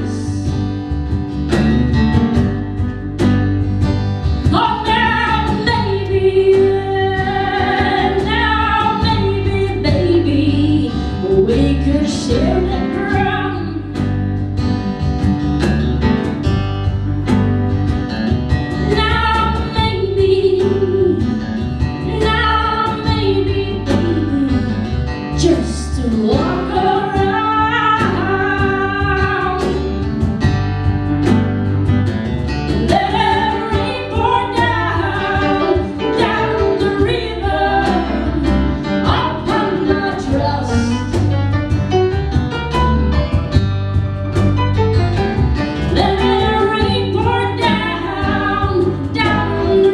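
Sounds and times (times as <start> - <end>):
acoustic guitar: 0.0 - 49.9
bass guitar: 0.0 - 49.9
cajon beat: 0.0 - 49.9
piano: 0.0 - 49.9
lead vocal singing: 32.8 - 41.2.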